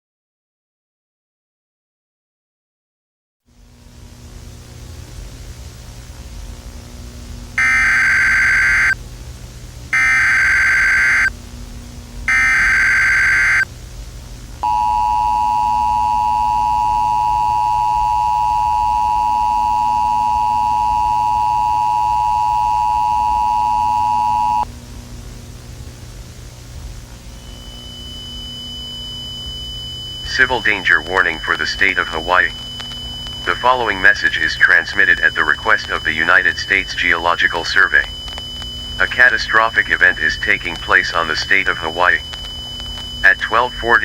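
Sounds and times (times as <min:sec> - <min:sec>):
low hum: 0:03.6 - 0:44.0
shrill data tone bursts: 0:07.6 - 0:09.0, 0:10.0 - 0:11.3, 0:12.3 - 0:13.7, 0:27.4 - 0:44.0
two-tone attention signal: 0:07.6 - 0:09.0, 0:10.0 - 0:11.3, 0:12.3 - 0:13.6, 0:27.5 - 0:44.0.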